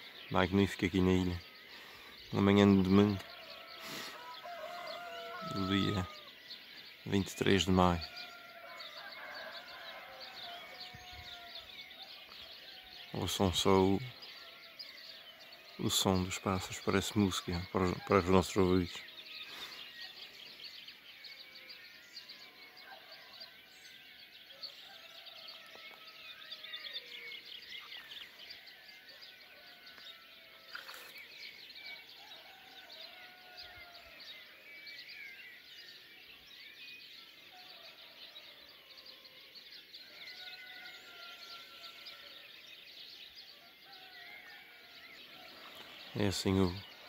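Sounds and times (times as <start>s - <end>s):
songbirds chirping and trilling: 0.0s - 47.0s
roosters crowing: 2.9s - 6.4s, 7.6s - 12.8s, 32.0s - 34.2s, 40.0s - 42.5s.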